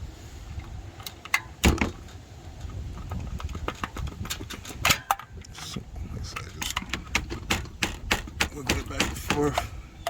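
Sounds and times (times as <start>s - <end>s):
wrench clicking and knocking: 6.6s - 9.7s.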